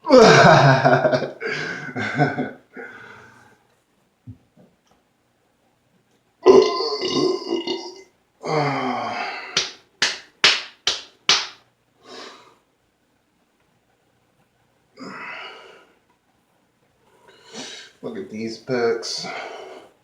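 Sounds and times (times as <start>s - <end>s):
man belching loudly: 6.4s - 9.3s
sharp slaps: 9.6s - 11.6s.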